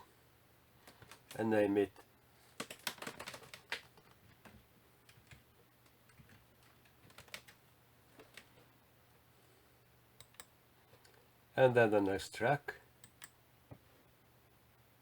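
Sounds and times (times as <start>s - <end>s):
typing on computer keyboard: 0.9s - 1.4s, 2.6s - 5.4s, 6.0s - 7.6s, 8.2s - 8.5s.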